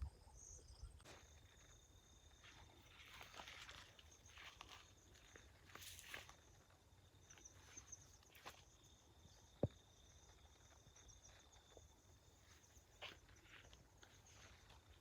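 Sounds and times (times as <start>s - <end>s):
insects chirping: 0.0s - 15.0s.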